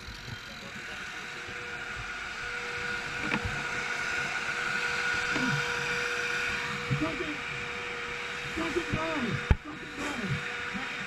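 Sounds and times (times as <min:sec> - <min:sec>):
machine humming: 0:00.0 - 0:11.0
hiss: 0:08.2 - 0:10.9.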